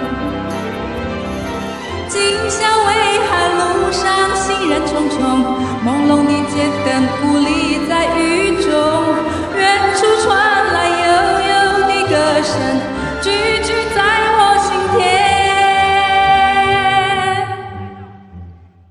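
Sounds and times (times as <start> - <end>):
steady musical accompaniment: 0.0 - 18.9
woman singing ballad: 2.1 - 17.7.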